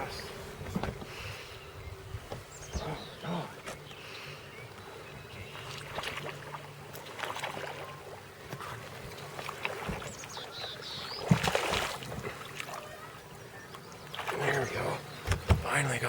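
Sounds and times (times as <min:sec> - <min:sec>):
knocks in a small boat: 0:00.6 - 0:01.2, 0:09.8 - 0:10.2, 0:15.2 - 0:15.9
water splashing: 0:05.4 - 0:16.0.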